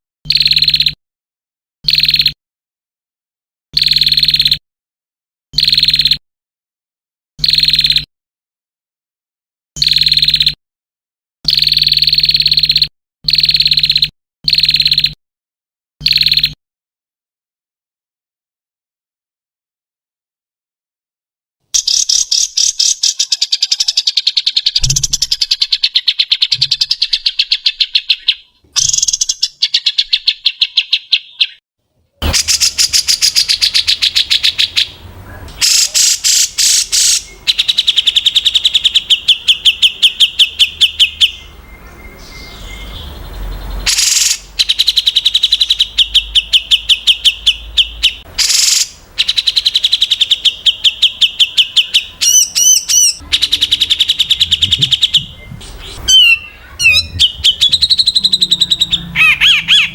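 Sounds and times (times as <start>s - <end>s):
songbird singing rapid sharp notes: 0.3s - 1.0s, 1.8s - 2.4s, 3.8s - 4.6s, 11.5s - 15.2s, 21.8s - 31.6s, 32.2s - 59.9s.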